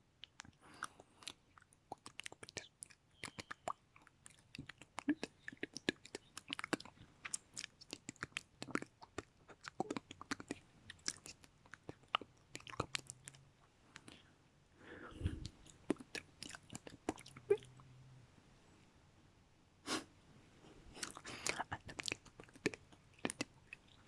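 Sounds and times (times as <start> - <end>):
lip and tongue clicks: 0.2 - 14.2, 15.3 - 17.9, 21.0 - 24.0
breath: 14.2 - 15.5.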